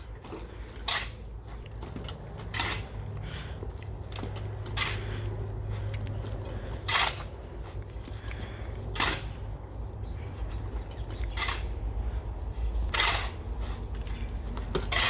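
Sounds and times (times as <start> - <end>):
shovel scraping sand: 0.4 - 3.1, 4.1 - 9.4, 10.3 - 11.8, 12.5 - 15.0.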